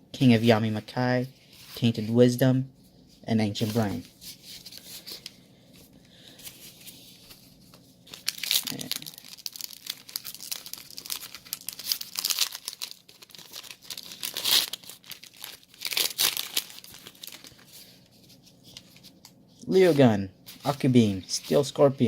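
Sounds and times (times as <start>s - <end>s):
foil wrapper tearing and crinkling: 8.1s - 17.7s.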